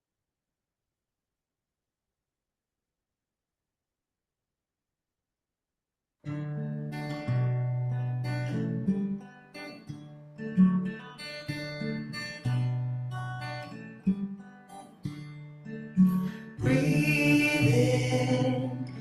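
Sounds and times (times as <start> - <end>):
acoustic guitar chords: 6.2 - 19.0.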